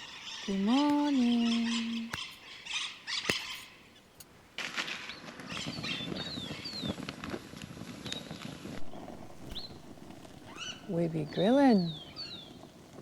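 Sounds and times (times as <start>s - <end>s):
steady hiss with crackles: 0.0s - 13.0s
high bird chirps: 8.9s - 12.6s.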